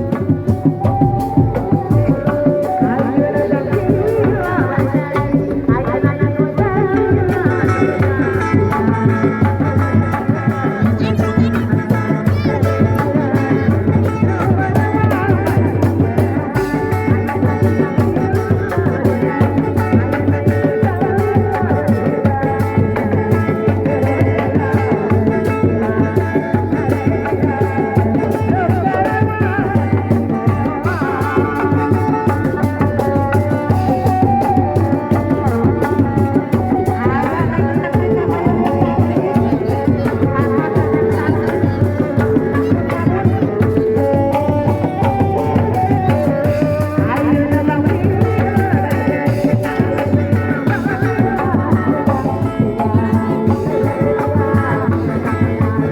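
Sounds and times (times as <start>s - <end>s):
wavering melody line: 0.0s - 8.9s, 31.0s - 55.6s
fast hand drumming: 0.0s - 55.9s.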